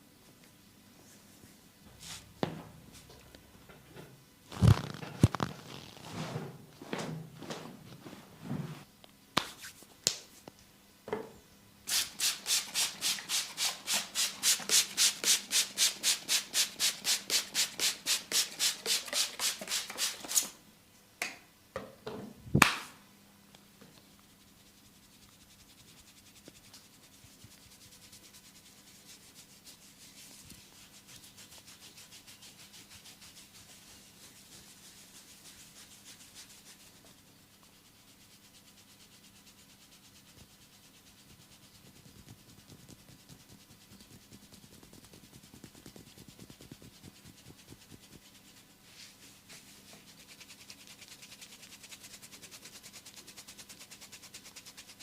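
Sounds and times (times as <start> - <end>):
hands rubbing oiled skin: 4.5 - 6.0, 24.1 - 55.0
loud snap: 22.6 - 23.0.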